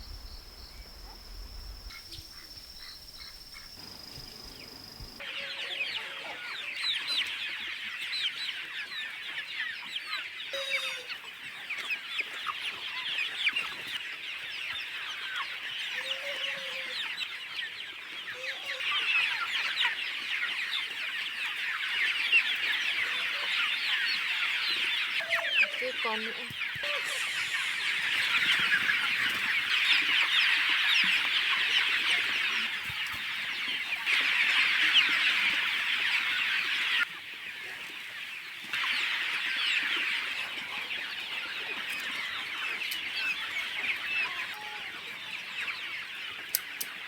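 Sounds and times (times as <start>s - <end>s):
chickens chirping and clucking: 0.0s - 47.0s
steady high tone: 27.0s - 28.8s.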